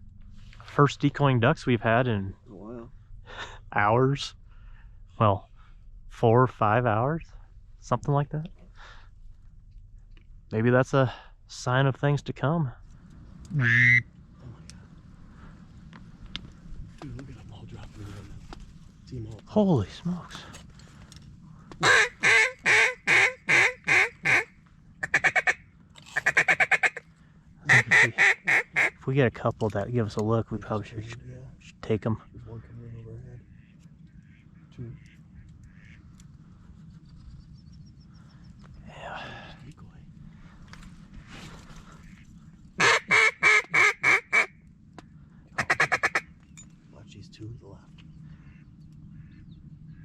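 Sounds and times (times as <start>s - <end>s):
duck call quacks: 13.5s - 14.1s, 21.8s - 27.0s, 27.7s - 29.0s, 34.3s - 36.0s, 42.8s - 44.5s, 45.6s - 46.3s
rapid feeding chatter call: 27.7s - 29.0s, 45.6s - 46.3s.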